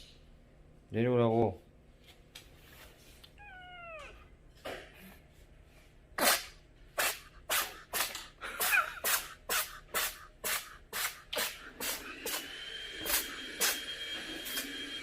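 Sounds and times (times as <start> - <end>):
cat sneezing: 6.2 - 12.0.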